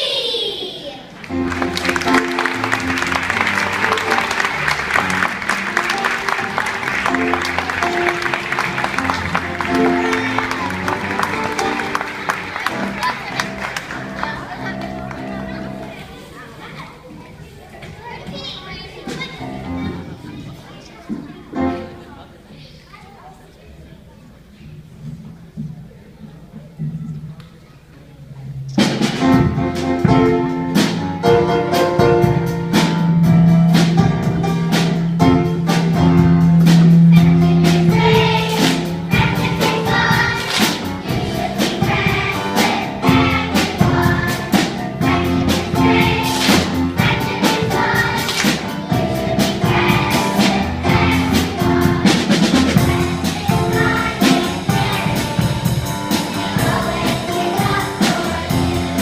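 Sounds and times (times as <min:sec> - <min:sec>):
instrumental backing with beat: 0:01.3 - 0:15.7, 0:28.6 - 0:59.0
children singing: 0:02.0 - 0:16.4, 0:36.1 - 0:59.0.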